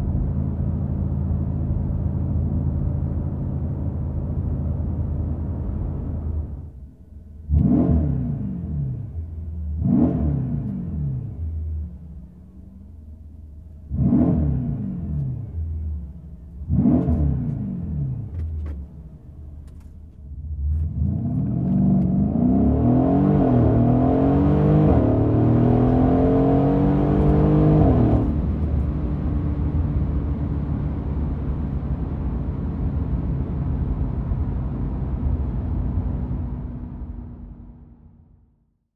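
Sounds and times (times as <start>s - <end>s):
car engine revving and accelerating: 7.4s - 12.1s, 13.8s - 37.5s.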